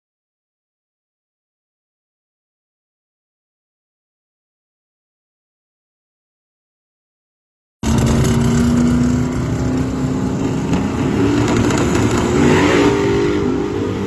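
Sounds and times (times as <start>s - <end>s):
loud engine revving: 7.8s - 14.0s.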